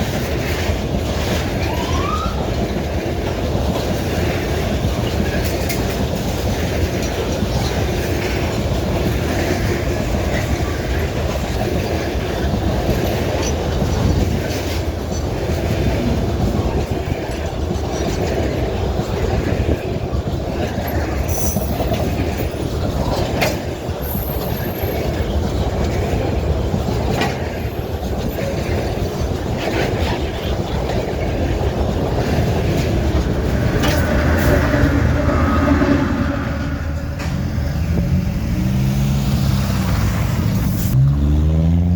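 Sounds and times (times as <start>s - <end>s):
clickety-clack of wheels: 0.0s - 41.1s
train wagons rumbling: 0.0s - 41.9s
high-pitched wheel squeals: 33.6s - 38.1s.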